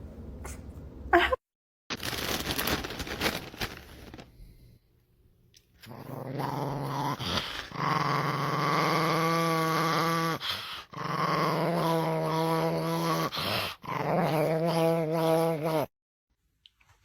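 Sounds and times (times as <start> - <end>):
dog growling: 5.8 - 15.9.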